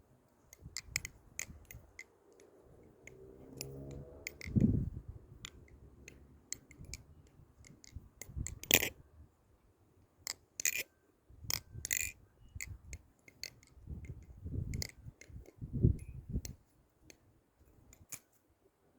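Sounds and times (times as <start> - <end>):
butterfly knife metallic clicks: 0.5 - 4.8, 5.4 - 9.0, 10.3 - 10.9, 11.5 - 17.2.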